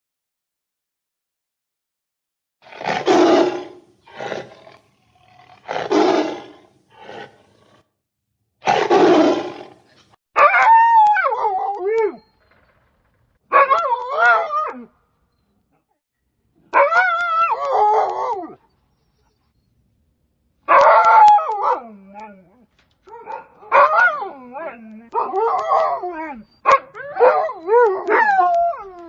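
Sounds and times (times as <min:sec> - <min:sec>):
animal roaring: 0:02.6 - 0:07.9, 0:08.6 - 0:10.1
animal howling: 0:02.7 - 0:07.8, 0:20.7 - 0:29.0.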